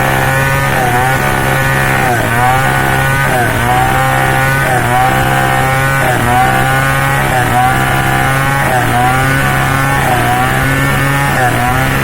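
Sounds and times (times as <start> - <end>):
chainsaw cutting timber: 0.0 - 12.0.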